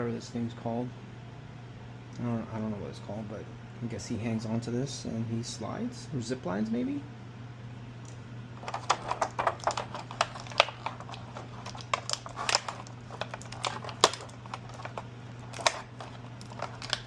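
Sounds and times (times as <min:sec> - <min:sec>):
plastic packaging clicking and crinkling: 0:08.6 - 0:17.0.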